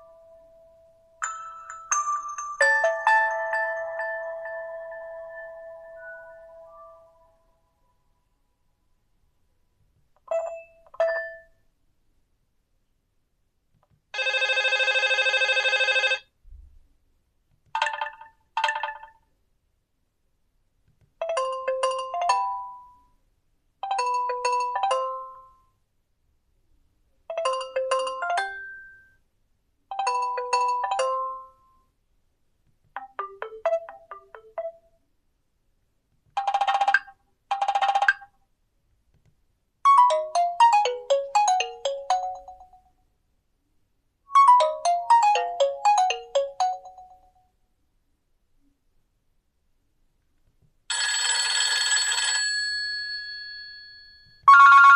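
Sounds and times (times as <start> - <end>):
phone ringtone melodies: 0.0 - 7.4, 14.2 - 16.2, 21.2 - 23.0, 23.8 - 25.6, 27.3 - 29.1, 29.9 - 31.7, 33.0 - 34.9, 36.4 - 38.3, 39.9 - 42.8, 44.3 - 47.4, 50.9 - 53.4, 54.4 - 54.9.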